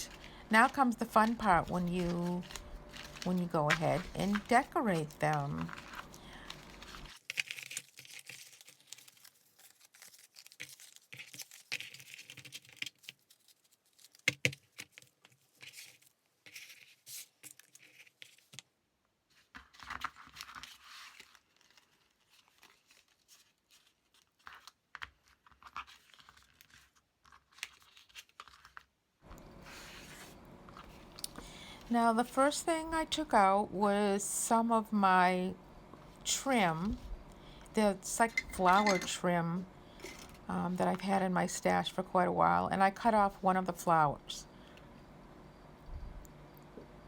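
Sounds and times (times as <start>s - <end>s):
paper rustling and crinkling: 0.0s - 18.6s, 19.3s - 31.4s.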